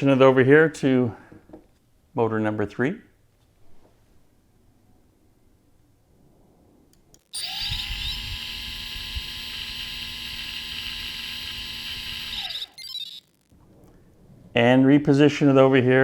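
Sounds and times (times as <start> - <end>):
electric motor whine: 7.2 - 13.5.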